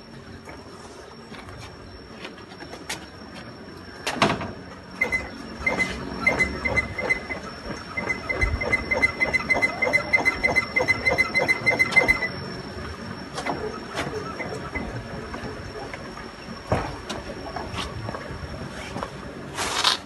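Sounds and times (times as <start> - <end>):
scooter suspension squeaking: 4.6 - 19.1.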